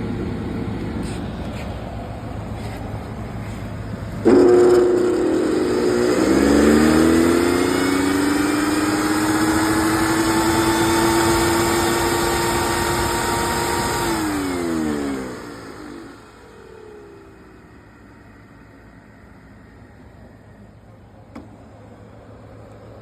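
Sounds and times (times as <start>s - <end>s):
electric lawn mower running: 4.2s - 17.4s.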